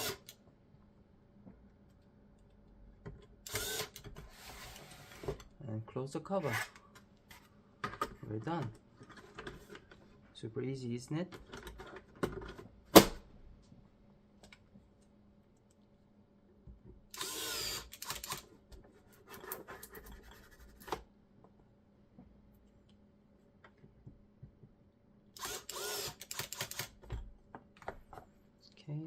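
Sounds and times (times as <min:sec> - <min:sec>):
cordless screwdriver whirring: 0:03.5 - 0:05.3, 0:17.1 - 0:18.4, 0:25.4 - 0:27.0.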